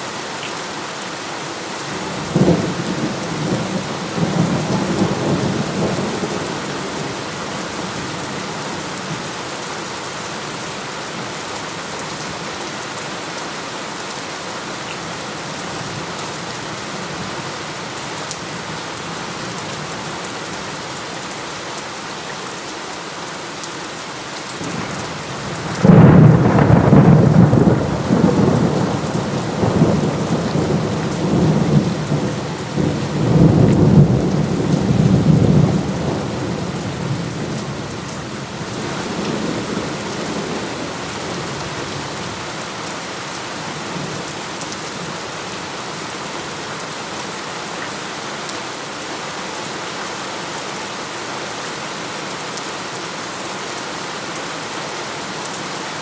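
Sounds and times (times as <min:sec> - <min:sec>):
heavy rain: 0:00.0 - 0:56.0
rolling thunder: 0:24.7 - 0:41.6.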